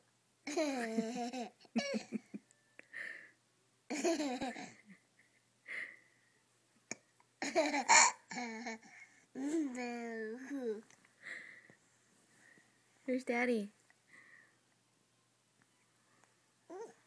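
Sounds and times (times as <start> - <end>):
girl giggling: 0.5 - 2.5.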